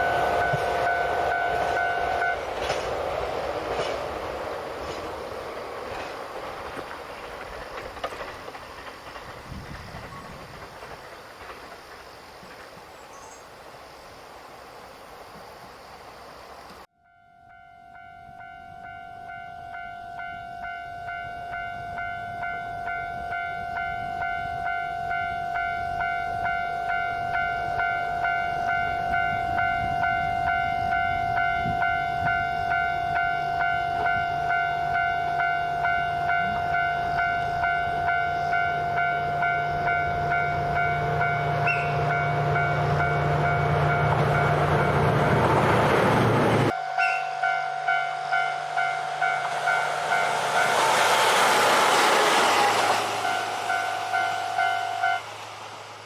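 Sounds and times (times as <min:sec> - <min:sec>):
level-crossing warning bell: 0:00.0 - 0:02.7, 0:16.9 - 0:45.7, 0:46.7 - 0:55.2
diesel train passing: 0:00.0 - 0:16.9, 0:17.5 - 0:56.0.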